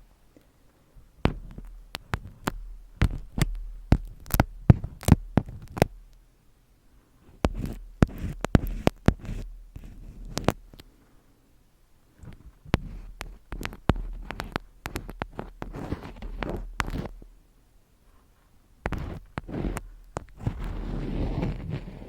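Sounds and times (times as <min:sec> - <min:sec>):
faint low hum: 0:00.0 - 0:22.0
scratchy rustling: 0:01.2 - 0:06.1, 0:07.2 - 0:10.8, 0:12.1 - 0:17.4, 0:18.1 - 0:22.0
sharp taps and clicks: 0:01.2 - 0:06.2, 0:07.4 - 0:10.9, 0:12.2 - 0:17.3, 0:18.8 - 0:20.6.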